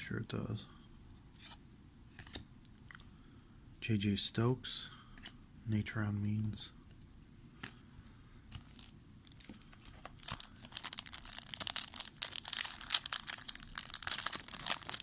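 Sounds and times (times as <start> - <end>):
wrapper crinkling and tearing: 8.6 - 15.0.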